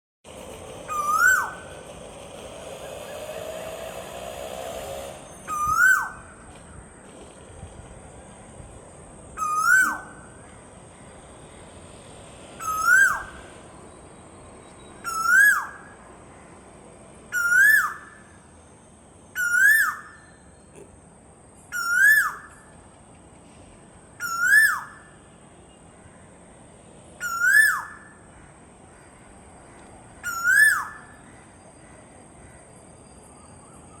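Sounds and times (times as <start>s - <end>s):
faint high whine: 28.9s - 34.0s.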